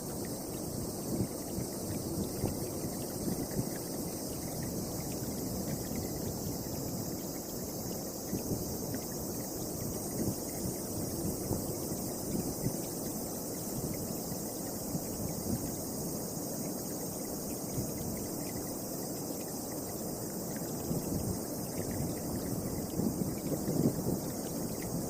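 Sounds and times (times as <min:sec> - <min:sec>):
insects chirring: 0:00.0 - 0:25.0
strong gusty wind on microphone: 0:00.2 - 0:12.9, 0:20.8 - 0:25.0.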